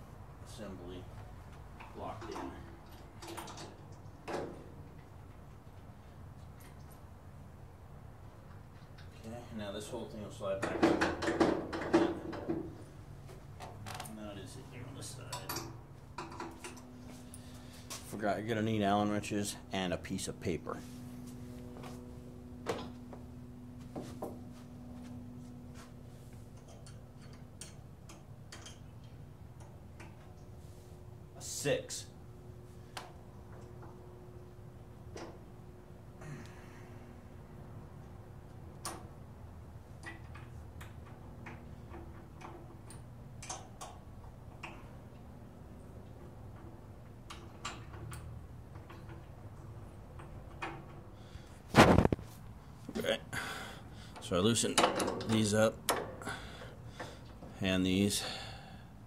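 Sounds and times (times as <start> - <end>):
faint steady hum: 0.0 - 59.0.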